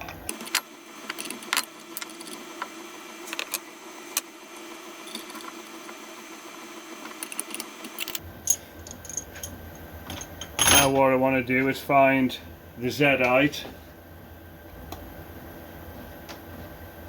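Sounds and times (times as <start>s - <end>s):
faint steady hum: 0.0s - 17.0s
metal tool clicks and clinks: 7.2s - 11.0s.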